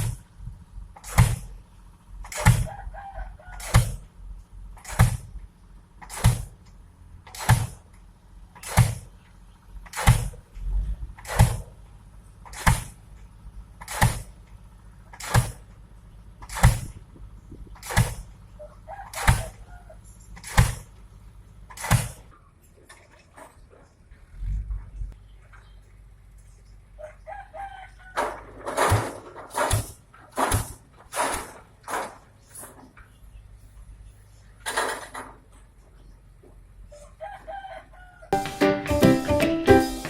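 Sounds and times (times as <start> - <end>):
pile hammer bangs: 1.0 - 1.6, 2.2 - 2.7, 3.6 - 4.1, 4.8 - 5.3, 6.0 - 6.6, 7.3 - 7.8, 8.6 - 9.1, 9.9 - 10.4, 11.2 - 11.7, 12.4 - 13.0, 13.8 - 14.4, 15.1 - 15.7, 16.4 - 17.0, 17.7 - 18.3, 19.1 - 19.6, 20.4 - 20.9, 21.7 - 22.3, 28.2 - 32.3.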